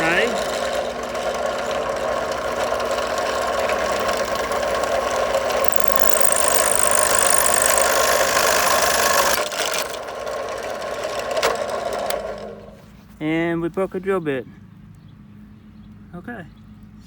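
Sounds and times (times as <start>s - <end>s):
bit cutting into wood: 0.0s - 10.4s
drill press running: 0.0s - 12.9s
thin high whine: 3.8s - 10.0s.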